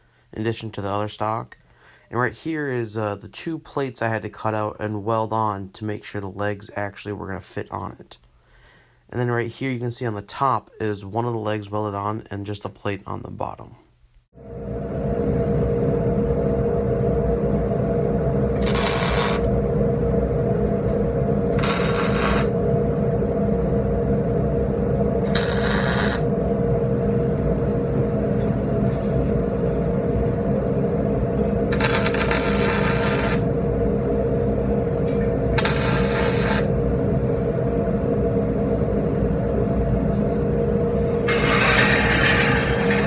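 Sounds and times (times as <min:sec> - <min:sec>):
steady machine hum: 0:14.3 - 0:43.0
arc welding bursts: 0:18.6 - 0:19.5, 0:21.5 - 0:22.6, 0:25.2 - 0:26.3, 0:31.7 - 0:33.5, 0:35.6 - 0:36.7.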